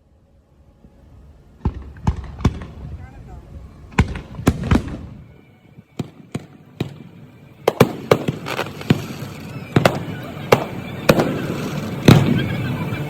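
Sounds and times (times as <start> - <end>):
firecrackers banging: 1.6 - 3.2, 3.9 - 13.0.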